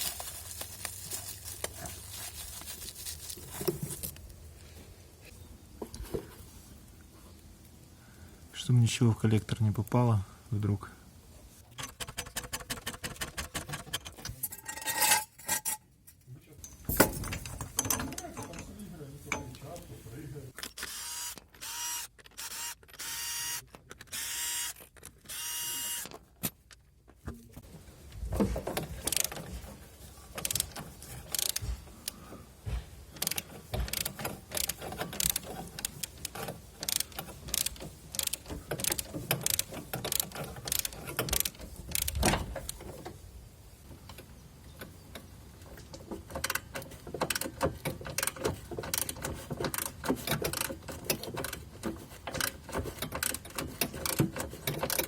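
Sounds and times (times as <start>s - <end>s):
ratchet wrench clicking: 30.4s - 31.6s, 33.2s - 42.2s.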